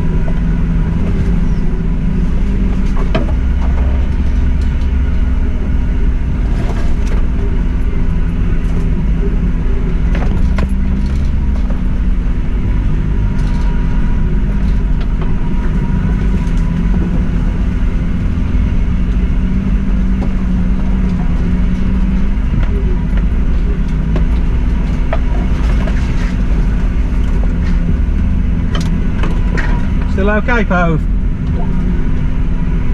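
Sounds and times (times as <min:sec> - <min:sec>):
car engine running: 0:00.0 - 0:32.9.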